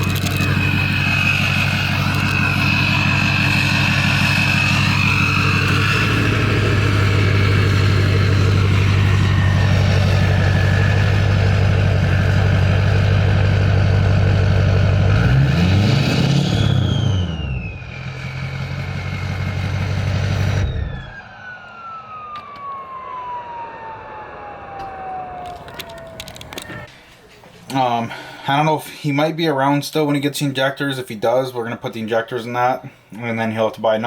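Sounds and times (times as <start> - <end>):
turbo whistling: 0.0 - 13.0, 16.4 - 19.8
diesel engine idling: 0.0 - 16.0, 16.6 - 21.1
engine revving: 0.0 - 23.6.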